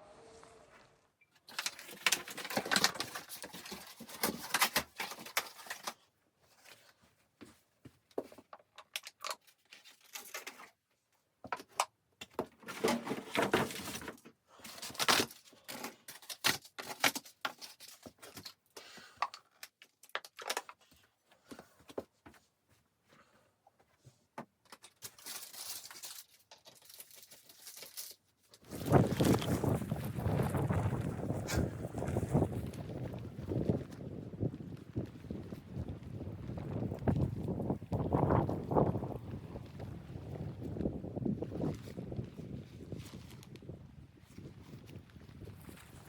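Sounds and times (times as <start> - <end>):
rustling and crinkling of objects handled: 0.7 - 46.0.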